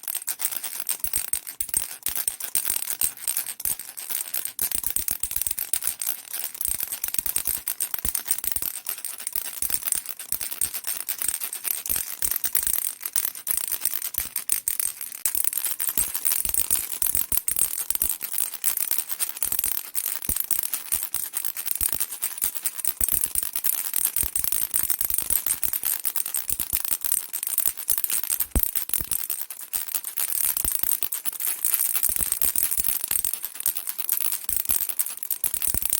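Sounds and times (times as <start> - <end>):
baby rattle shaking: 11.8 - 18.8.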